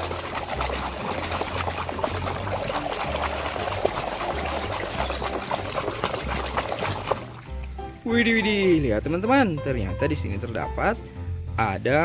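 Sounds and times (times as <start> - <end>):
water pouring and splashing: 0.0 - 9.6.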